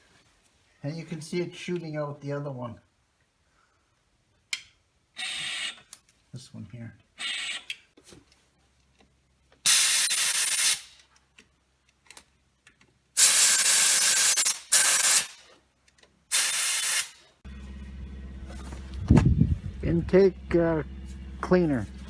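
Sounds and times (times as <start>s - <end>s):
aerosol spray bursts: 9.7s - 10.9s, 13.2s - 15.4s, 16.3s - 17.2s.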